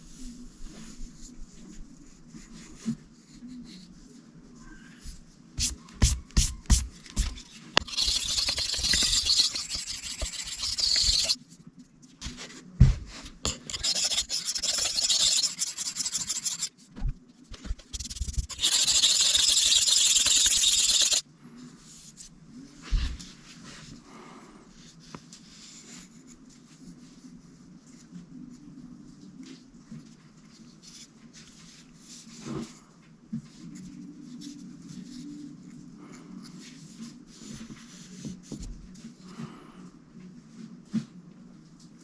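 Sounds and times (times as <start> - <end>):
knife scraping on sharpening stone: 7.2 - 11.4, 13.5 - 16.7, 18.5 - 21.2.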